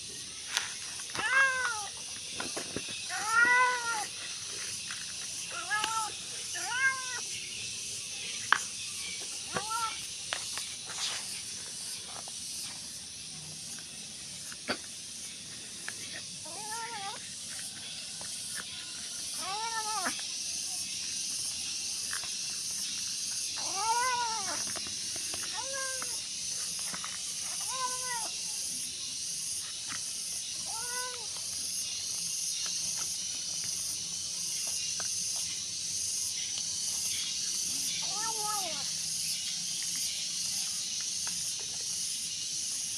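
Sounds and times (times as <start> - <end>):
cat meowing: 1.2 - 1.9, 3.1 - 4.1, 5.5 - 7.2, 16.4 - 17.2, 19.4 - 20.2, 23.6 - 24.6, 25.5 - 26.2, 27.6 - 28.3, 30.6 - 31.3, 38.0 - 38.8.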